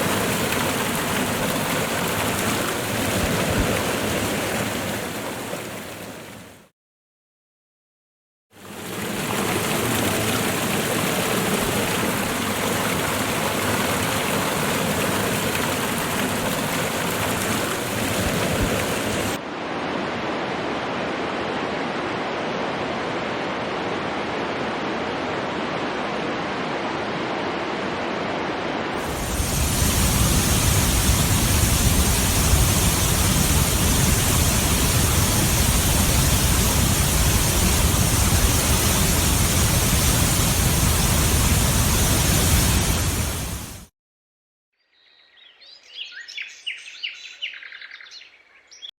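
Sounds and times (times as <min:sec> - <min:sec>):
waterfall rushing: 0:00.0 - 0:06.2, 0:08.7 - 0:19.4, 0:29.0 - 0:43.9.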